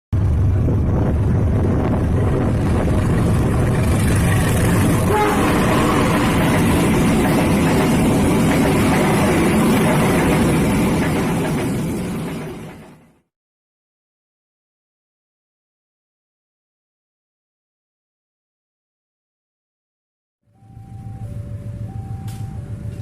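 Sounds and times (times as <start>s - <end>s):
train rumbling and rattling past: 0.1s - 13.2s, 20.6s - 23.0s.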